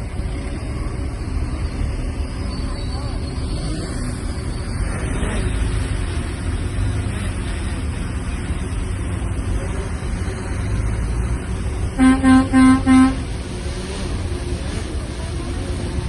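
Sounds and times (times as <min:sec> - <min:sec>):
bulldozer diesel engine rumbling: 0:00.0 - 0:16.0
vehicle horn toots: 0:12.0 - 0:13.3.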